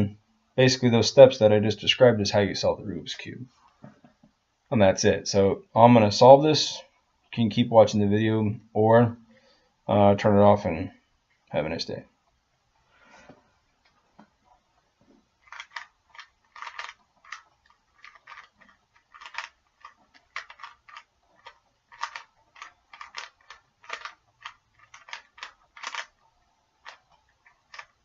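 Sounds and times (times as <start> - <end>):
puzzle cube clicking as twisted: 15.4 - 26.2, 26.8 - 28.0.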